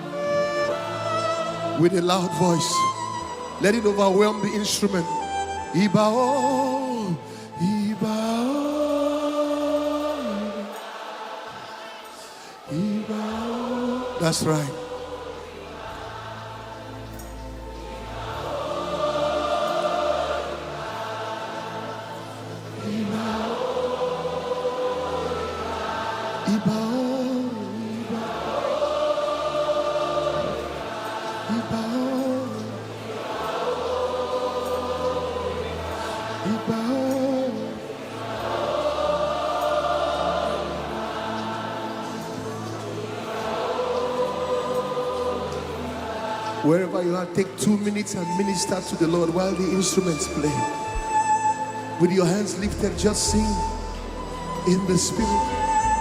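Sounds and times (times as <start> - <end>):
sustained instrumental chords: 0.0 - 10.9, 48.0 - 56.0
many voices singing together: 0.0 - 56.0.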